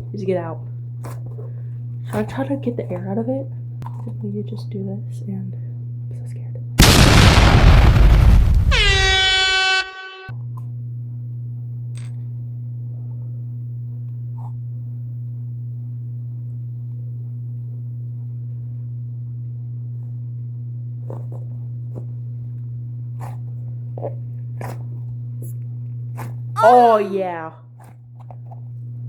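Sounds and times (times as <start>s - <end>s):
low hum: 6.8s - 10.3s.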